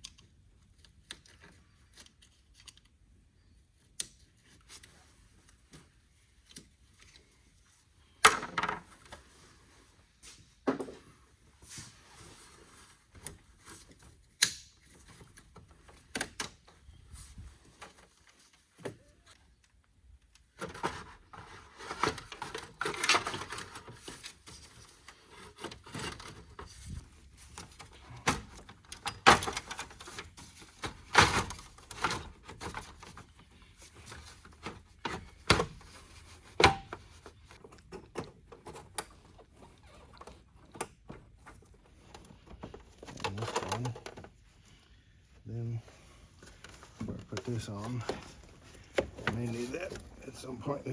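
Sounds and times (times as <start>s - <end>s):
rubbing and scraping: 45.8s - 50.9s.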